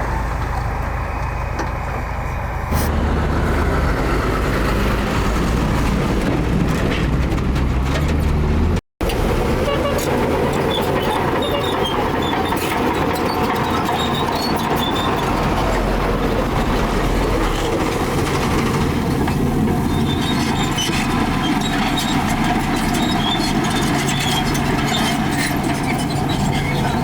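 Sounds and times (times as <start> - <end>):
heavy diesel engine running: 0.0 - 27.0
short high squeaks: 9.7 - 15.3.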